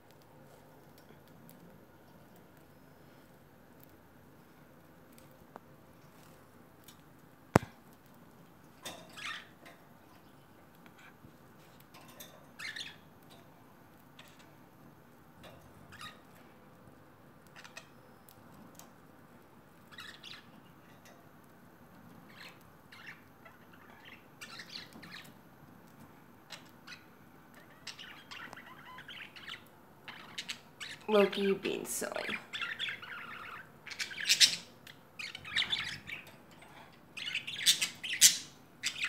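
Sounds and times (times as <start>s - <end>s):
budgerigars chirping: 22.3s - 25.3s, 26.9s - 31.1s, 32.2s - 36.3s, 37.2s - 39.0s.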